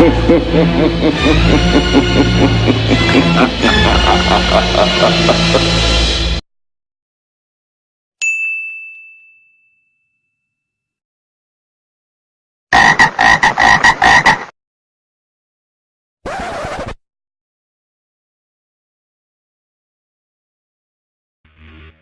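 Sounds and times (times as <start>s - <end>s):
bright ding: 8.2s - 10.7s.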